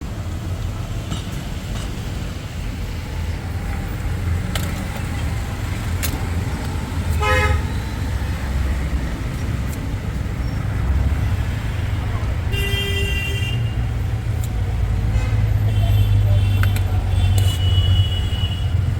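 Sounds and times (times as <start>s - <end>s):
street traffic rumble: 0.0s - 18.9s
vehicle horn honk: 7.2s - 7.8s, 12.5s - 13.8s.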